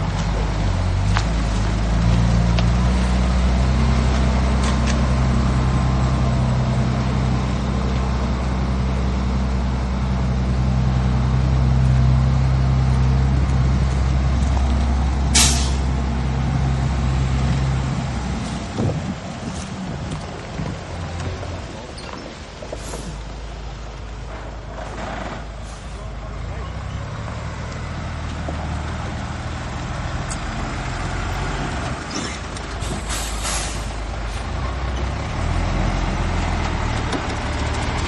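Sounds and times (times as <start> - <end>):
diesel engine under load: 0.0 - 38.0
air hiss: 15.4 - 15.9, 32.8 - 34.4.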